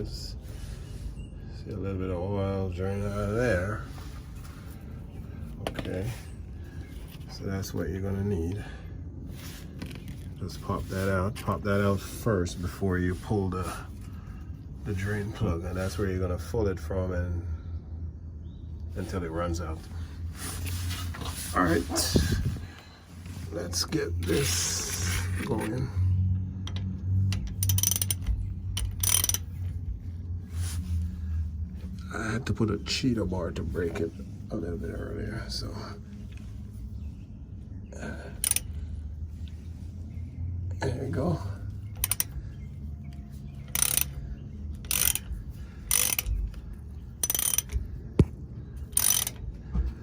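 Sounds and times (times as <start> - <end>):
steady low hum: 0.0 - 50.0
socket ratchet clicking: 27.3 - 29.5, 38.4 - 38.7, 42.0 - 42.4, 43.7 - 44.2, 44.8 - 45.3, 45.9 - 46.4, 47.2 - 47.8, 48.9 - 49.4.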